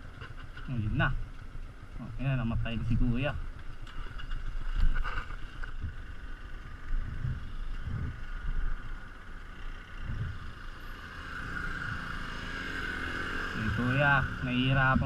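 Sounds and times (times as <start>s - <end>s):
wind buffeting microphone: 2.4s - 9.0s, 9.9s - 10.6s, 13.6s - 15.0s
motorcycle engine running: 5.4s - 15.0s.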